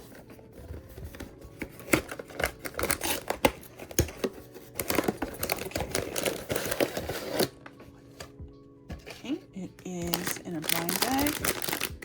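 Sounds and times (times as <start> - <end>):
packaging rustling and crinkling: 0.0 - 7.6, 10.0 - 12.0
cardboard and plastic clicks: 0.9 - 7.5.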